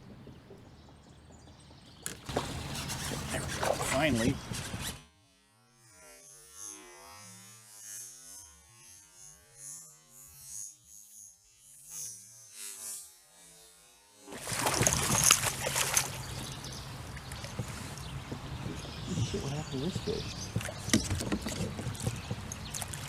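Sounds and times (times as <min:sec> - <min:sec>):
fish splashing and knocking: 0:00.1 - 0:04.2, 0:14.3 - 0:23.0.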